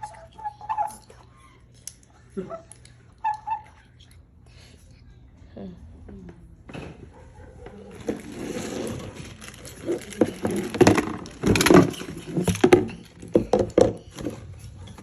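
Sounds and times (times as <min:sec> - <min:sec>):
plastic track pieces knocking: 0:08.1 - 0:14.3.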